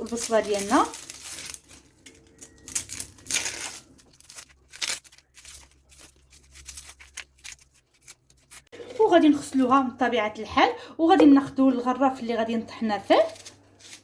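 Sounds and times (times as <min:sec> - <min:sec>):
onion skin being peeled: 0:00.0 - 0:08.7.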